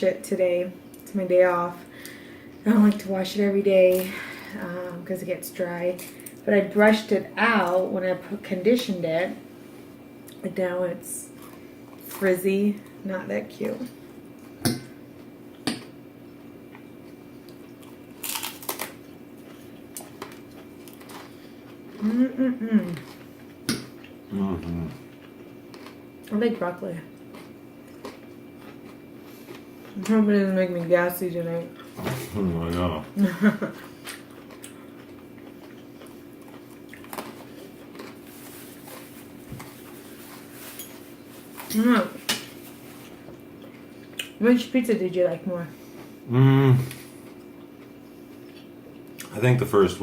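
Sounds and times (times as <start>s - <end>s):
faint steady hum: 0.0s - 50.0s
person chewing food: 14.1s - 26.3s, 27.1s - 30.1s, 33.7s - 40.6s, 42.6s - 44.4s, 46.8s - 49.3s
crunching bite of pizza: 34.0s - 39.9s.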